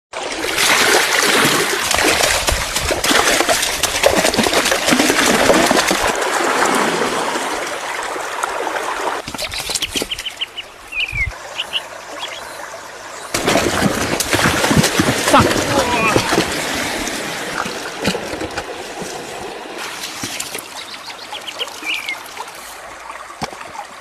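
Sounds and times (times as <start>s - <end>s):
water splashing and sloshing: 0.1s - 24.0s
bird chirping: 9.4s - 13.3s, 20.8s - 22.2s.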